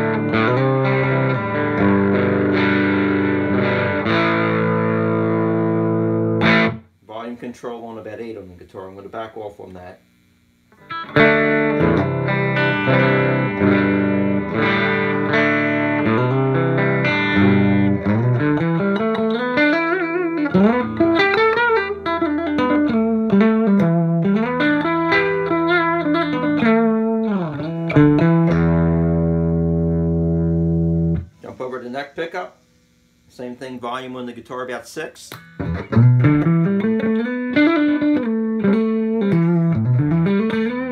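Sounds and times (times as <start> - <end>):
electric guitar playing: 0.0 - 6.9, 10.7 - 31.5, 35.3 - 40.9.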